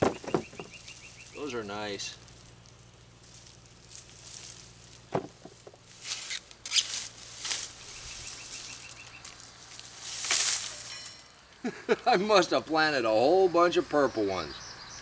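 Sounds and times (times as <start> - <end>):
dry mulch rustling: 0.0 - 11.5.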